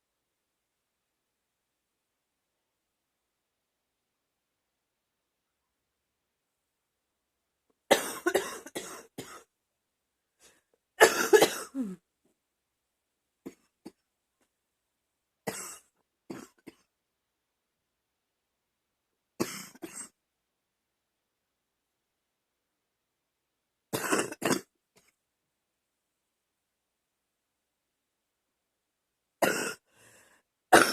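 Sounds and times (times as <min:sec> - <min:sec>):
woman coughing: 0:07.9 - 0:09.4, 0:11.0 - 0:12.0, 0:29.4 - 0:29.8.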